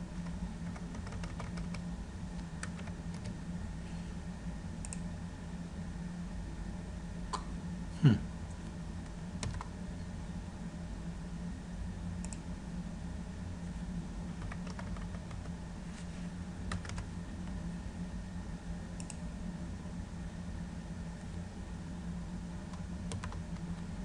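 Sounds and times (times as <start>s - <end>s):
low hum: 0.0s - 24.0s
laptop keyboard typing: 0.2s - 1.8s, 2.4s - 3.4s, 9.4s - 9.7s, 14.4s - 15.6s, 16.7s - 17.1s, 23.1s - 23.6s.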